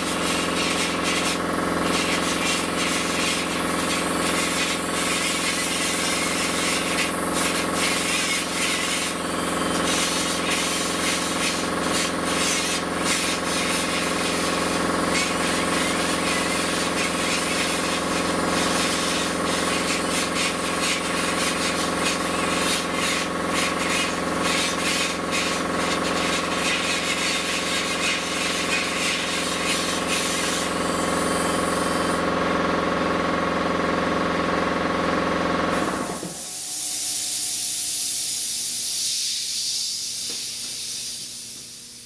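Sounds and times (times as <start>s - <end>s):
power tool grinding metal: 0.0s - 32.3s.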